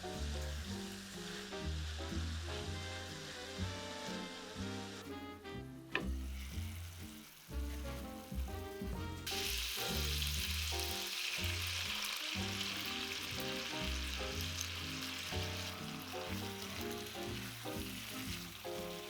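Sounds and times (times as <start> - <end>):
background music: 0.0 - 19.0
food sizzling in a frying pan: 0.0 - 19.0.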